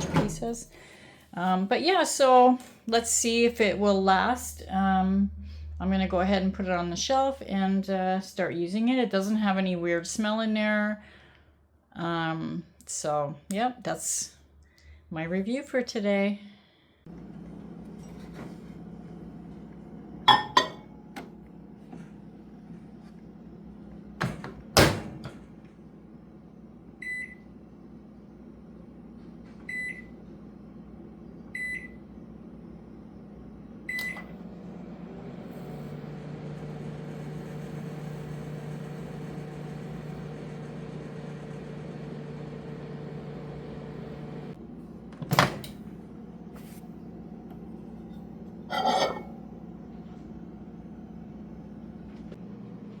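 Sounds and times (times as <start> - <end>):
microwave humming: 0.0 - 5.2, 17.1 - 53.0
microwave keypad beeps: 27.0 - 27.5, 29.7 - 30.1, 31.6 - 32.0, 33.9 - 34.3.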